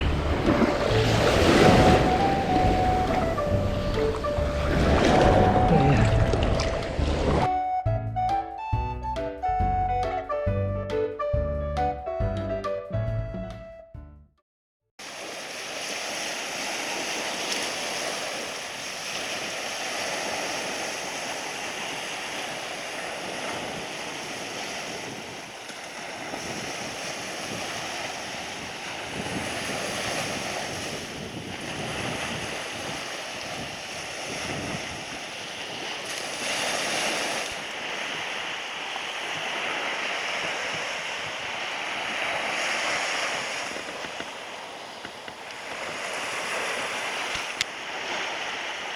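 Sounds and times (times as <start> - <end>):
surf breaking on beach: 0.0 - 7.5, 15.0 - 48.9
wind noise on microphone: 0.0 - 7.6, 19.4 - 48.9.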